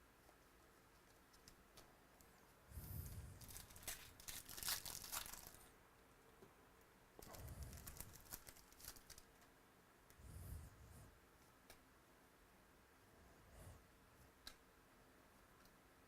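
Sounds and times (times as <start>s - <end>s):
cards being handled: 3.4s - 5.7s
wrapper tearing and crinkling: 3.4s - 5.7s, 7.3s - 9.3s.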